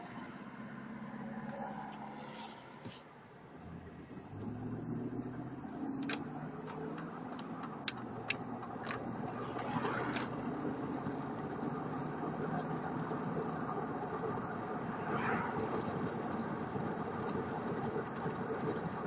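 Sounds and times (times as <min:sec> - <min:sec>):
car engine humming: 0:00.0 - 0:19.0
sharp clicks: 0:05.8 - 0:13.4.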